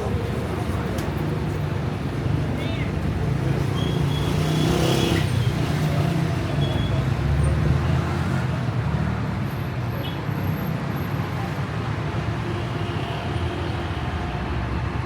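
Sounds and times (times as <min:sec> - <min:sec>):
traffic rumble: 0:00.0 - 0:08.8.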